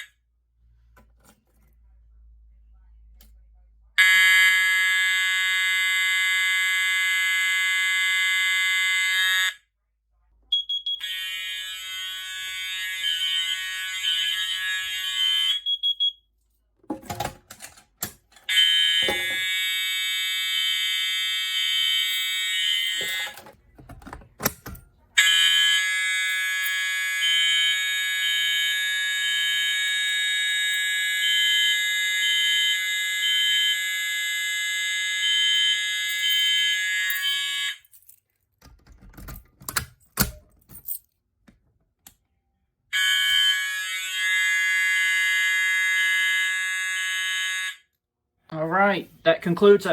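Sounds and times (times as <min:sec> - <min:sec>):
fire alarm horns tone: 0:04.0 - 0:09.7, 0:10.5 - 0:16.2, 0:18.5 - 0:23.5, 0:25.2 - 0:38.1, 0:42.9 - 0:49.9.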